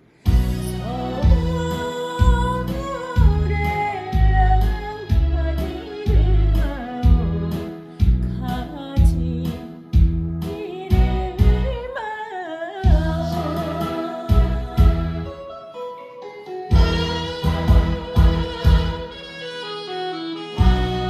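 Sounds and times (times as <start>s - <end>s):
solo voice singing with vibrato: 10.6s - 15.3s
backing band with drum beat: 16.7s - 19.2s, 20.6s - 21.0s.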